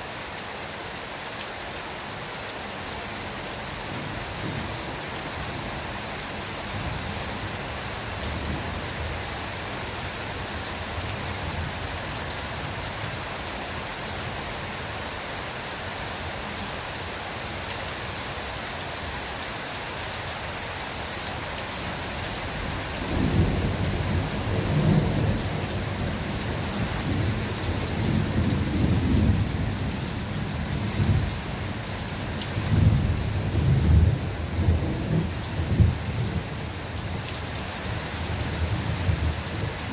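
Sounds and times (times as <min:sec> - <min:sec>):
steady rain in forest: 0:00.0 - 0:39.9
rolling thunder: 0:23.0 - 0:29.9.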